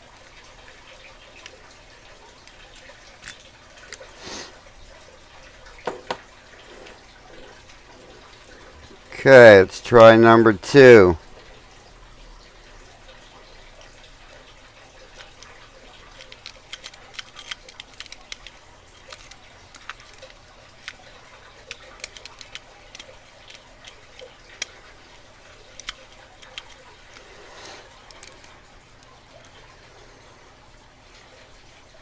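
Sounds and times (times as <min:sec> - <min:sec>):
lock pick clicking in a lock: 0:16.1 - 0:21.0, 0:21.7 - 0:24.8, 0:25.7 - 0:27.3, 0:28.1 - 0:29.6.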